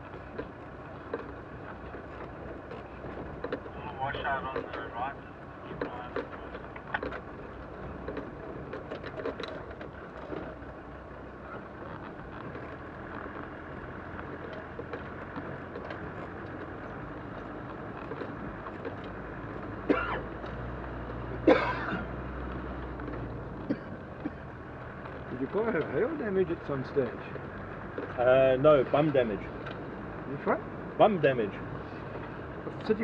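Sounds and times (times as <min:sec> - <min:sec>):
vehicle engine and tyre noise: 0:00.0 - 0:33.0.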